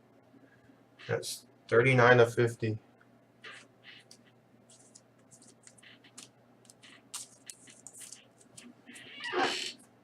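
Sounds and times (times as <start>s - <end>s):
trading cards rustling and sliding: 3.5s - 8.8s.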